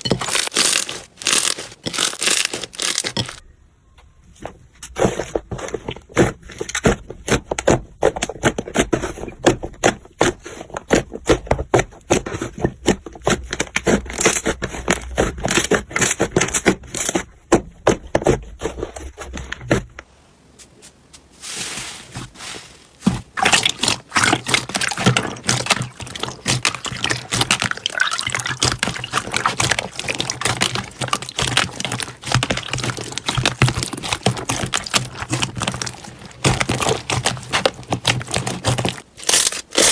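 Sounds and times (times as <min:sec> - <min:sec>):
slime squishing and crackling: 0:00.0 - 0:03.4, 0:23.0 - 0:39.9
wet slime crackling: 0:00.0 - 0:03.4, 0:23.0 - 0:39.9.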